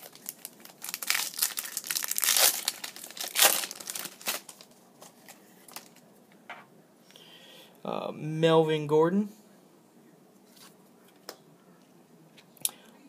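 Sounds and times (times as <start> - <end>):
plastic wrapper tearing and crinkling: 0.0 - 6.0.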